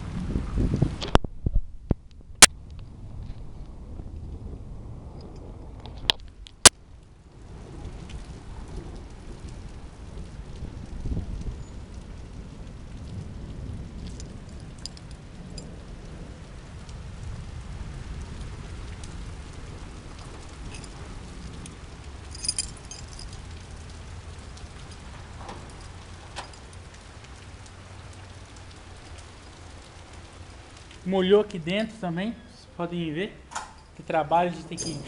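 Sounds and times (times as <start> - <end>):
steady rain falling: 0.0 - 35.0
high metallic clink: 34.6 - 35.0.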